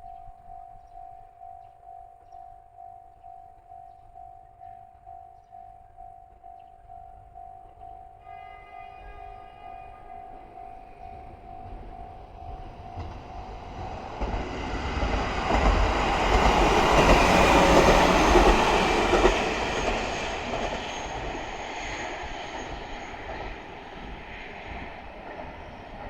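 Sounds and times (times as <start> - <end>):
diesel railcar passing: 8.2 - 26.0.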